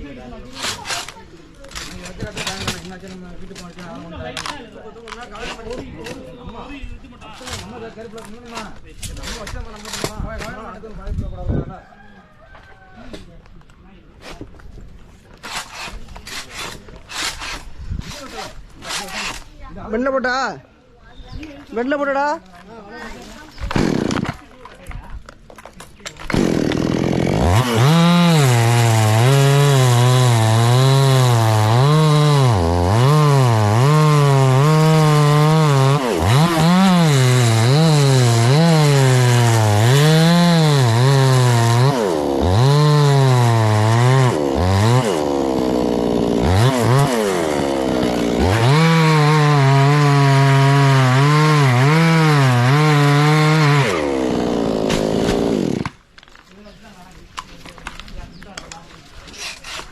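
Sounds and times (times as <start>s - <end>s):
chainsaw cutting into trunk: 15.4s - 19.5s, 23.6s - 24.4s, 26.2s - 56.0s.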